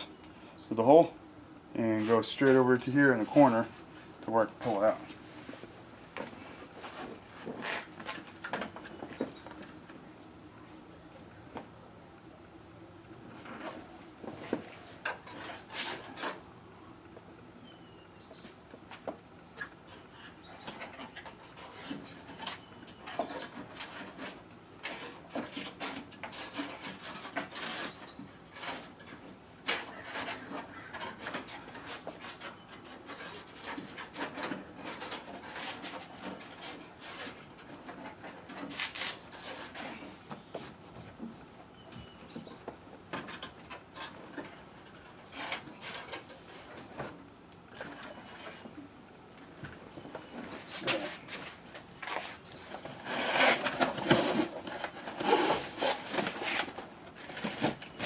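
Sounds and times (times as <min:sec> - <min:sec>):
cord rubbing and scraping: 0:06.3 - 0:08.3, 0:50.2 - 0:58.0.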